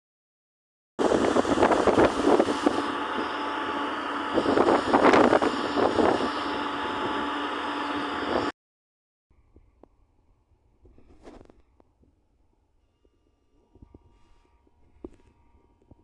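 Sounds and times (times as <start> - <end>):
excavator engine running: 1.0 - 8.5
wind gusting on microphone: 1.0 - 8.5.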